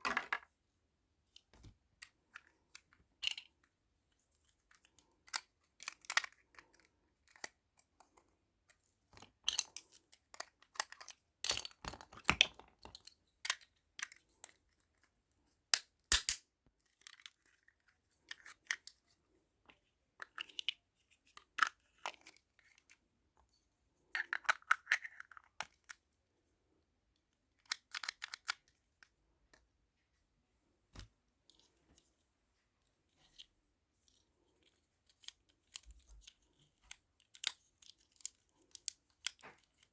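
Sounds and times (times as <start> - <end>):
small pieces clicking and tapping: 4.7 - 8.2, 9.2 - 14.6, 24.1 - 26.0, 27.6 - 28.7, 35.1 - 39.9.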